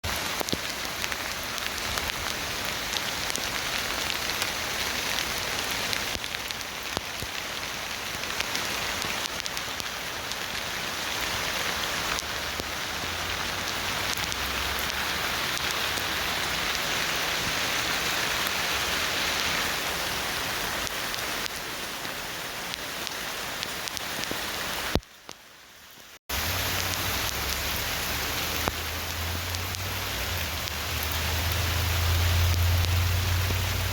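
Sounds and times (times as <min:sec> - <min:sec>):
steady rain falling: 0:00.0 - 0:33.9.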